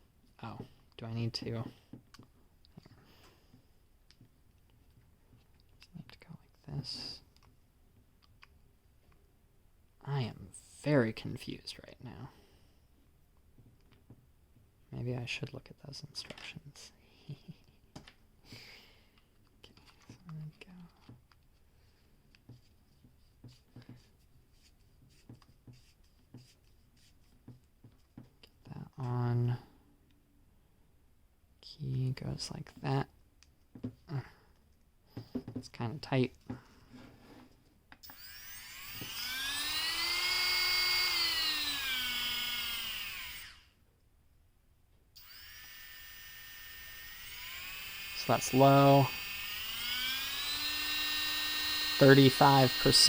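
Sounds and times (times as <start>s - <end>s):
rotary tool motor whine: 38.0s - 43.8s, 45.2s - 53.0s.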